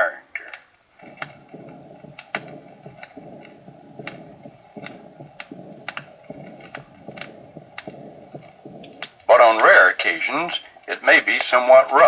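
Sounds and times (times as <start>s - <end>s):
steady hiss: 0.0s - 12.0s
sharp clicks: 0.4s - 9.7s
heartbeat with murmurs: 0.4s - 12.0s.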